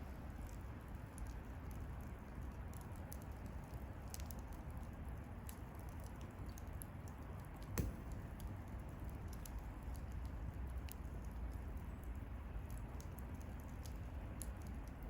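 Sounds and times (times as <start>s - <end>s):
bonfire burning: 0.0s - 15.0s
fire crackles: 0.0s - 15.0s
fire pop: 7.5s - 11.6s.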